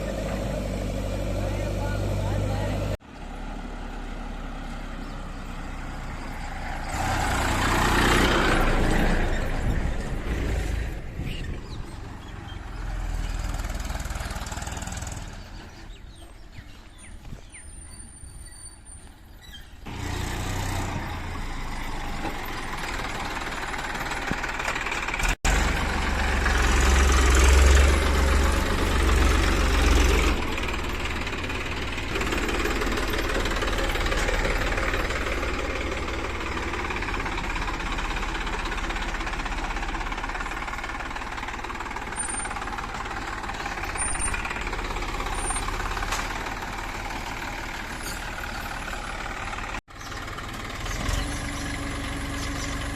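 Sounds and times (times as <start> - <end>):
engine running: 0.0 - 52.9.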